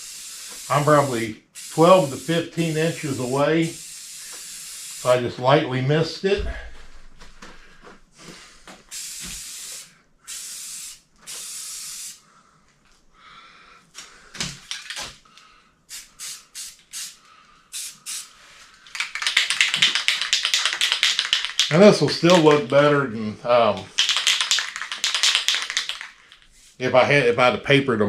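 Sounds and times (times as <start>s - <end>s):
aerosol can spraying: 0.0s - 5.2s, 8.9s - 12.2s, 15.9s - 18.3s, 18.9s - 22.6s, 23.9s - 26.8s.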